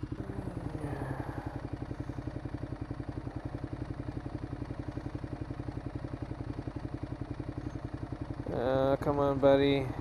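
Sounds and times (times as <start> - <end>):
motorcycle engine idling: 0.0 - 10.0.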